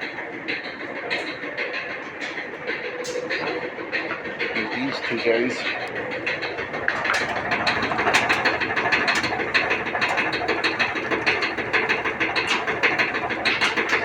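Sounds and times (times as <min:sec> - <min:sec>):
tumbling drum hum: 0:00.0 - 0:14.0
clothes dryer thumping and knocking: 0:06.0 - 0:14.0.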